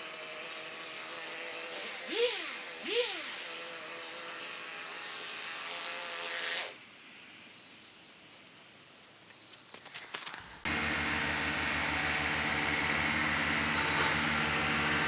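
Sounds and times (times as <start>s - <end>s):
small engine revving: 0.0s - 6.8s, 10.6s - 15.0s.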